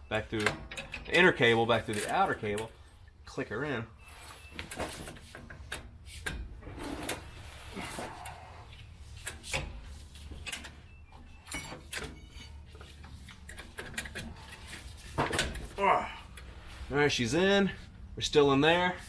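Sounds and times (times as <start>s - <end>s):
metallic clicks and scrapes: 4.2s - 15.7s.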